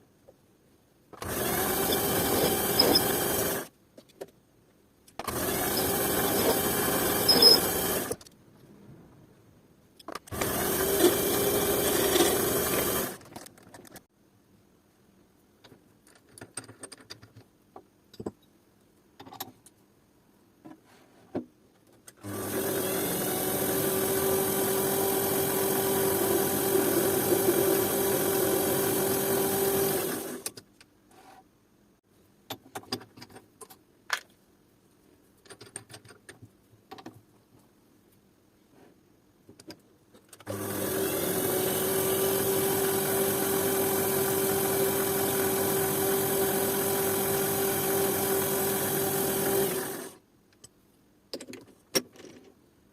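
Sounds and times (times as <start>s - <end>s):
small electric motor humming: 1.2s - 3.7s, 5.3s - 8.2s, 10.4s - 13.2s, 40.5s - 50.2s.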